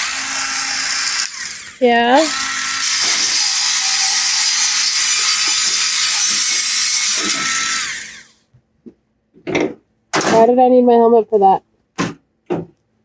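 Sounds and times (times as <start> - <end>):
electric grinder on metal: 0.0 - 8.4.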